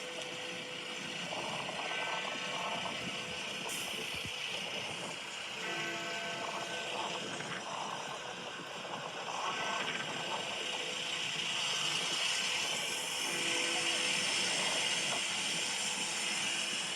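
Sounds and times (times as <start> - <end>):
steady background noise: 0.0 - 16.9
faint clock tower bell: 5.6 - 8.2.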